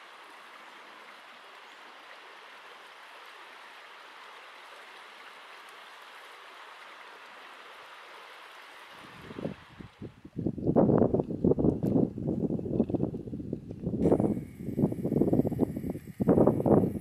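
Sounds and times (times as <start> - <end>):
mountain stream rushing: 0.0 - 10.1.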